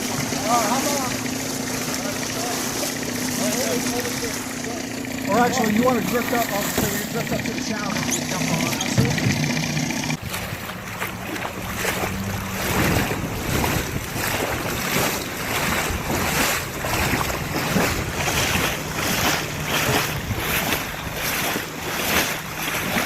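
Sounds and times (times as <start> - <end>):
low motor hum: 0.0 - 23.0
water splashing: 0.0 - 23.0
wind rushing over microphone: 12.1 - 19.0.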